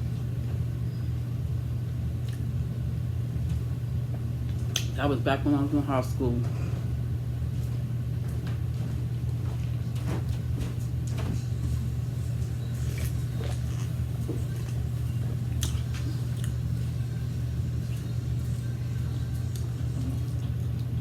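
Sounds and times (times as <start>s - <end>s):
low hum: 0.0s - 21.0s
chewing: 2.2s - 2.5s, 12.5s - 17.0s, 17.8s - 21.0s.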